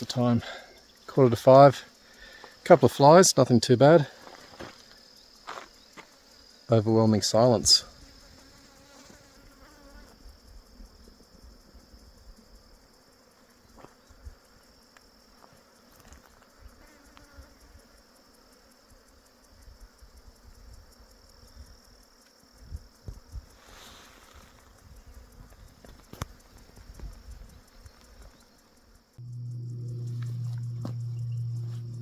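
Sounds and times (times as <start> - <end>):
insect chorus: 0.0 - 32.0
fly buzzing past: 7.9 - 11.4, 12.4 - 32.0
small ticks: 13.2 - 23.6, 24.4 - 32.0
low rumble: 29.2 - 32.0.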